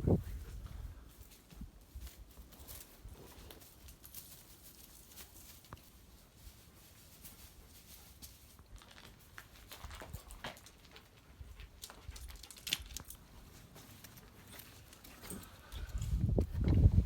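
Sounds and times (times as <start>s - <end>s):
footsteps crunching debris: 8.2s - 17.0s.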